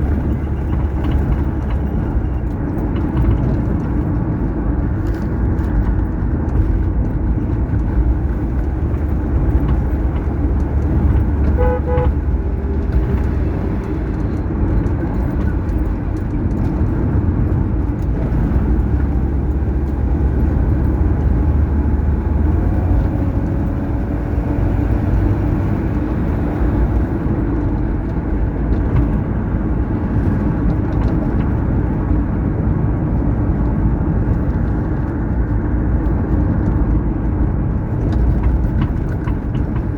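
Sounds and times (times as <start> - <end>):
vehicle driving on highway: 0.0 - 39.9
car horn toots: 11.3 - 12.7.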